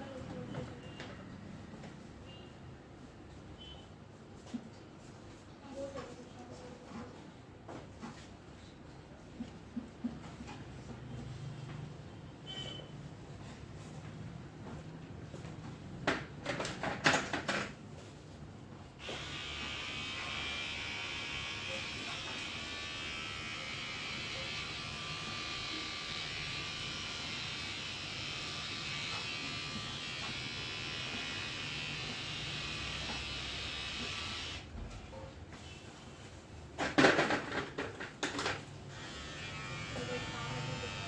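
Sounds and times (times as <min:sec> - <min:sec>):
small electric motor buzzing: 0:19.0 - 0:34.6, 0:38.9 - 0:41.0.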